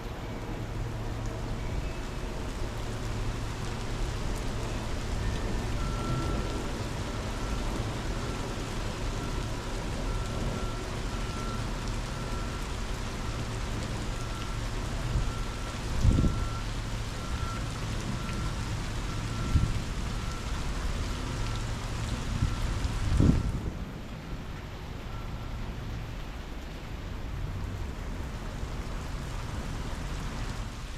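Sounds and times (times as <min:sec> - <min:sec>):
heavy rain: 0:00.0 - 0:30.9
low wind rumble: 0:00.0 - 0:30.9
wind gusts buffeting microphone: 0:22.2 - 0:24.0.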